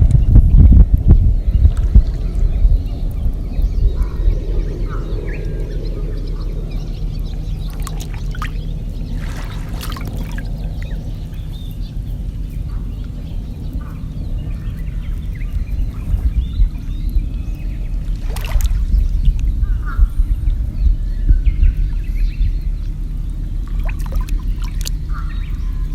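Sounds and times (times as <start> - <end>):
low rumble: 0.0 - 25.9
faint bird calls: 2.2 - 25.9
paddle water sloshing and dripping: 4.9 - 13.9, 14.7 - 20.7, 22.8 - 25.9
water splashes: 7.0 - 12.2, 15.0 - 20.7, 23.0 - 25.9.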